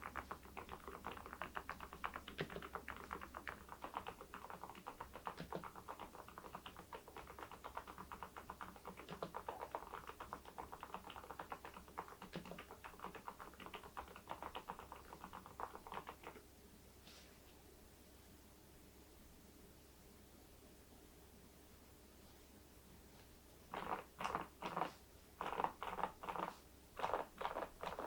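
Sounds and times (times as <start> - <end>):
mechanical keyboard typing: 0.0 - 16.4, 23.8 - 28.0.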